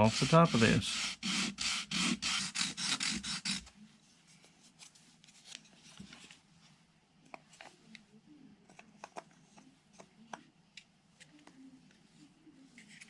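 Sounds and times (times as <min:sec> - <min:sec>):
sanding wood: 0:00.0 - 0:03.6.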